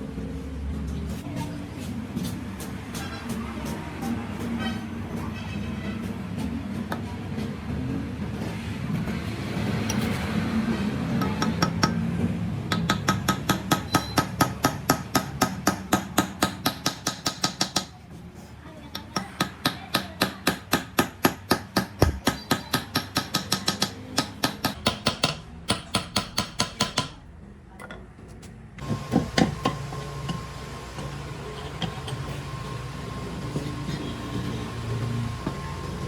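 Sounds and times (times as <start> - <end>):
steady hum with held tone: 28.8 - 36.0.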